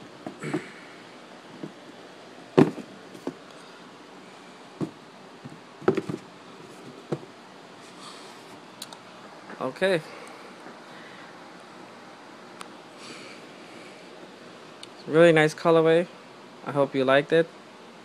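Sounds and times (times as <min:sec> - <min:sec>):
low steady hiss: 0:00.0 - 0:18.0
handling knocks and taps: 0:01.6 - 0:01.8, 0:02.6 - 0:03.4, 0:04.8 - 0:06.2, 0:06.8 - 0:07.3.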